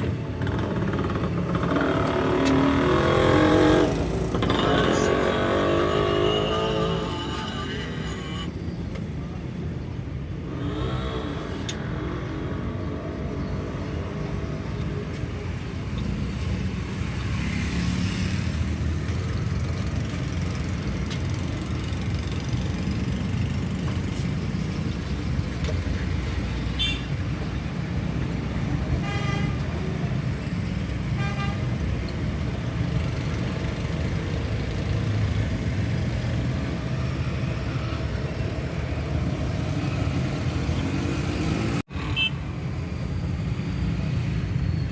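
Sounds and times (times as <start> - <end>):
heavy truck engine rumbling: 0.0 - 17.3, 18.3 - 44.9
truck horn toots: 2.5 - 8.5.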